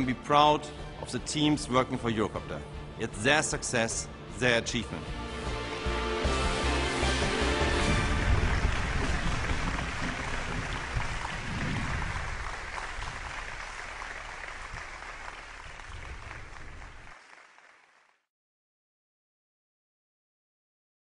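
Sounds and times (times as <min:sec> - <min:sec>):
crowd applauding: 0:06.3 - 0:18.3.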